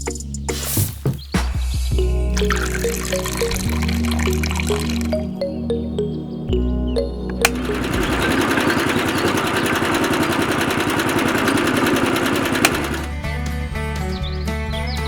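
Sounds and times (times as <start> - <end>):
background music: 0.0 - 9.2, 12.1 - 15.0
small machine rattling: 7.4 - 13.1.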